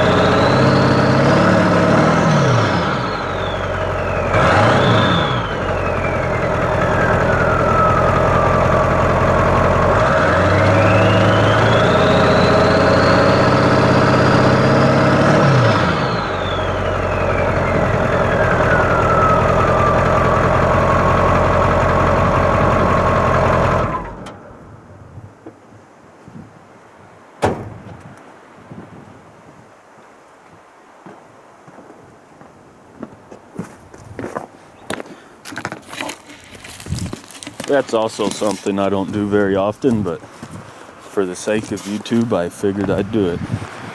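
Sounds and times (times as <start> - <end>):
diesel engine idling and revving: 0.0 - 24.7, 40.9 - 43.9
turbo whistle: 2.6 - 13.8, 15.7 - 21.5.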